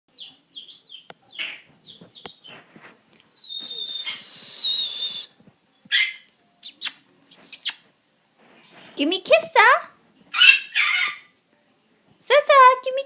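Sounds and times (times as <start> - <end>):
bird chirping: 0.1 - 7.8
bird whistling long wavering note: 3.3 - 5.3
bird scratchy call: 3.4 - 5.3.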